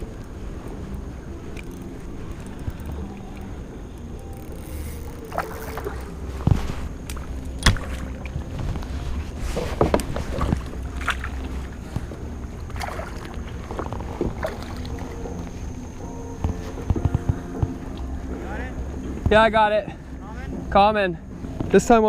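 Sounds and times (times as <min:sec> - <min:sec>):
steady low rumble: 0:00.0 - 0:22.0
knocks and taps on a kayak: 0:09.6 - 0:11.2.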